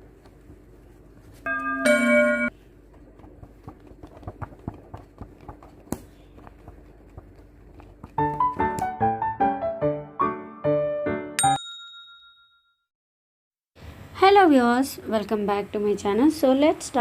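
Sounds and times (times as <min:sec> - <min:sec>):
bright two-note chime: 0:01.5 - 0:02.5.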